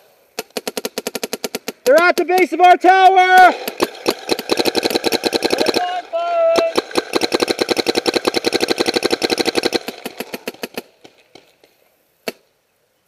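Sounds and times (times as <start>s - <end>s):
paintball marker firing: 3.4s - 11.6s, 12.2s - 12.5s.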